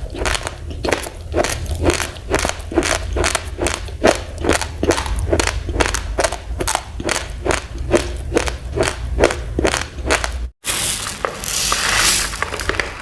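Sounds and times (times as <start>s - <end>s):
chewing crunchy rice: 0.0s - 10.4s.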